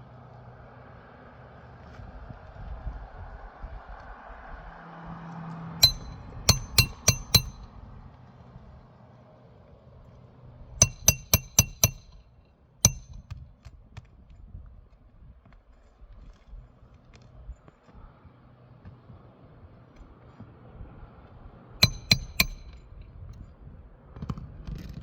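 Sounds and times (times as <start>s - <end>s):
hammer tapping metal tool: 5.8s - 7.7s, 10.8s - 12.3s, 12.9s - 13.4s, 21.8s - 22.9s.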